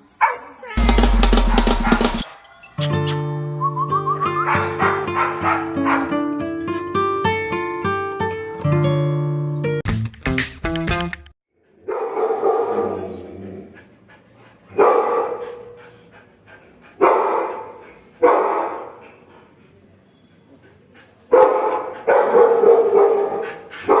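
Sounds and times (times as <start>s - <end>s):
dog barking: 0.2s - 0.5s, 4.4s - 6.3s, 11.7s - 13.3s, 14.8s - 15.8s, 17.0s - 19.0s, 21.3s - 24.0s.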